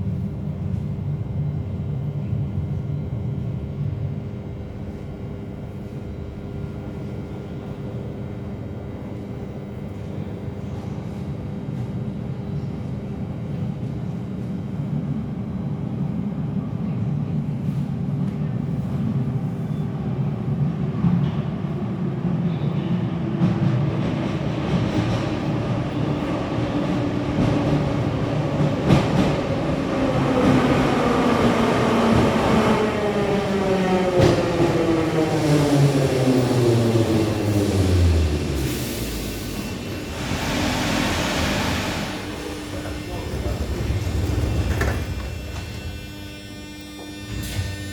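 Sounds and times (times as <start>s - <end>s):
subway train rumbling and braking: 0.0s - 47.9s
train wheels clacking on track: 36.4s - 47.9s.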